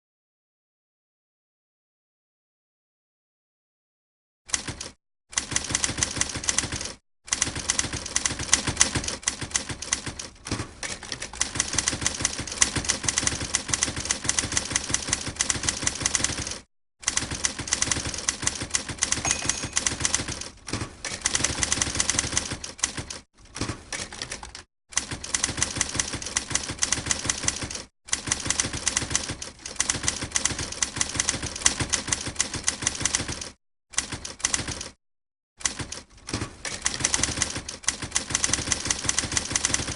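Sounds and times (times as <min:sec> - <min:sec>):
typewriter keys striking: 0:09.8 - 0:24.4.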